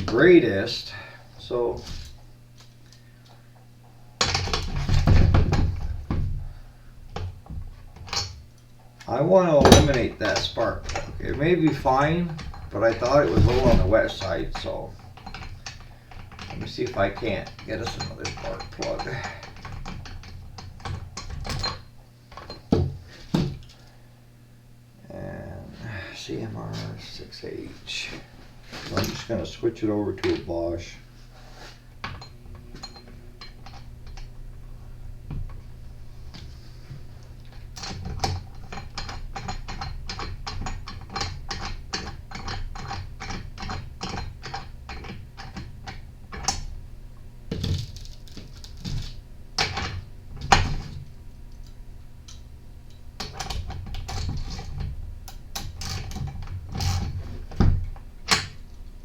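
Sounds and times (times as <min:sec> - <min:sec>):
tool handling clicks and knocks: 0:01.8 - 0:06.5, 0:07.1 - 0:24.0, 0:32.0 - 0:34.5, 0:36.3 - 0:46.8, 0:47.5 - 0:59.0.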